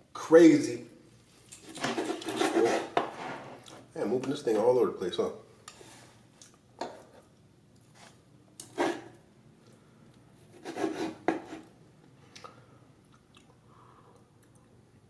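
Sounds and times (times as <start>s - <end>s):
knocks and scrapes: 1.6s - 3.8s.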